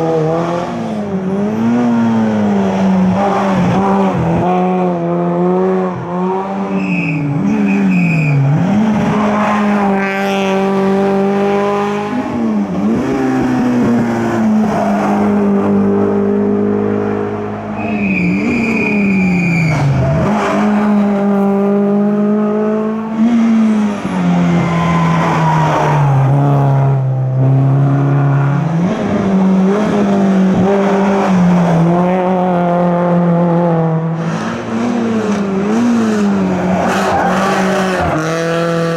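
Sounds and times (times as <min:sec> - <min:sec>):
race car engine revving: 0:00.0 - 0:38.9
tyre squeals: 0:06.7 - 0:08.5, 0:17.8 - 0:20.6.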